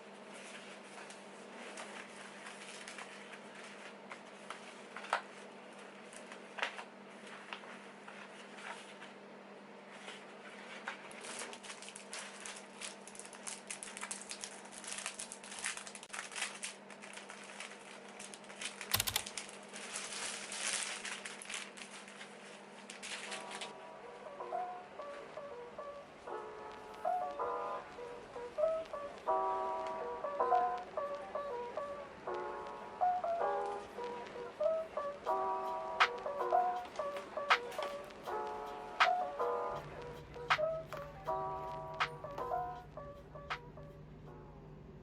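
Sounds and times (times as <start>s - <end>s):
packaging crinkling: 10.8s - 23.7s.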